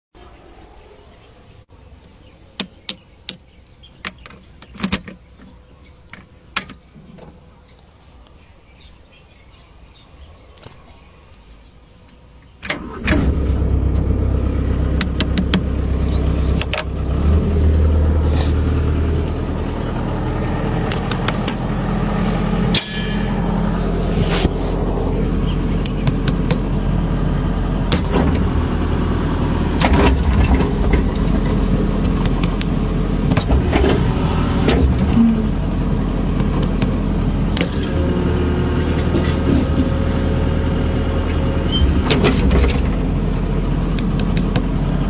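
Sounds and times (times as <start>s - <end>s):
sharp clicks and knocks: 15.0s - 15.7s, 16.6s - 16.9s, 20.9s - 21.6s, 25.8s - 26.7s, 29.8s - 34.0s, 36.4s - 37.0s, 44.0s - 44.8s.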